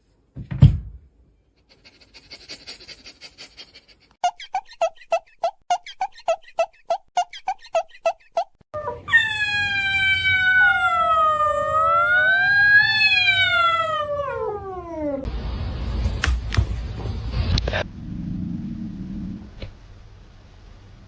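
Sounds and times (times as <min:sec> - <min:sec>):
cat yowling: 0:08.8 - 0:15.3.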